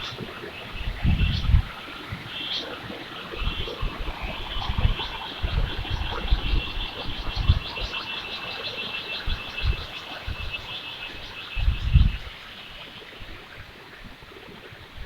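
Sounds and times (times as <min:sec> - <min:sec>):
low thumps on microphone: 0:11.6 - 0:12.2.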